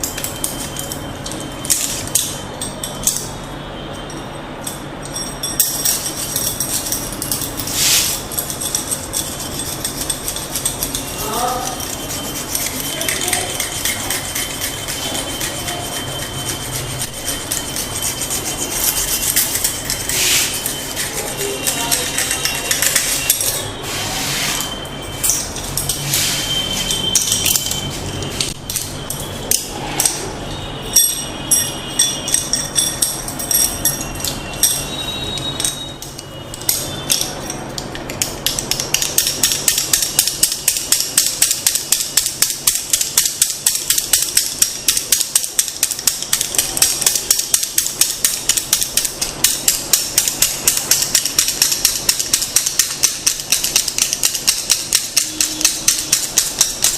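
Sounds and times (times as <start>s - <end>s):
wooden massage tools tapping: 35.6s - 56.9s.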